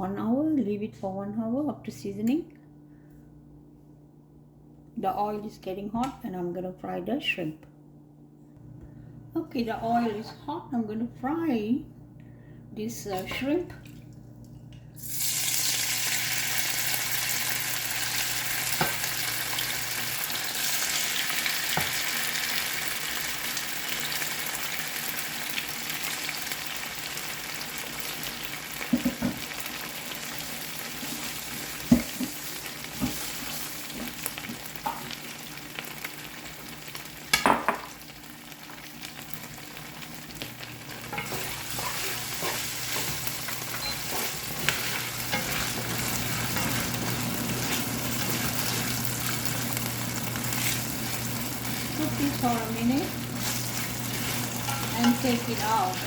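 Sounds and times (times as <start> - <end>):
shrimp sizzling in hot oil: 15.0 - 37.3, 37.9 - 56.0.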